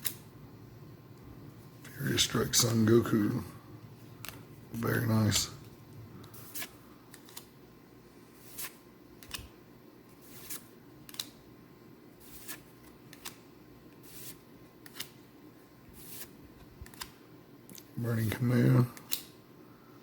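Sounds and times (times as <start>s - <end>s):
trading cards snapping: 10.4s - 11.4s.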